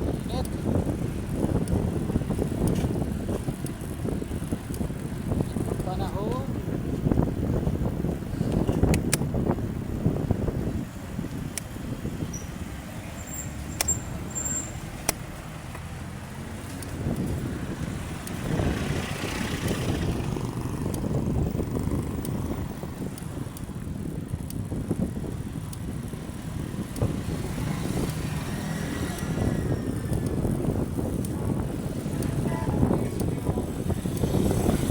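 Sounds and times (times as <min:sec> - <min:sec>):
road and vehicle rumble: 0:00.0 - 0:34.9
sharp clicks: 0:08.5 - 0:09.3, 0:11.3 - 0:11.7, 0:13.6 - 0:15.9, 0:16.5 - 0:18.6, 0:19.7 - 0:21.1, 0:22.0 - 0:24.7, 0:26.8 - 0:27.3, 0:27.9 - 0:31.4, 0:34.0 - 0:34.6.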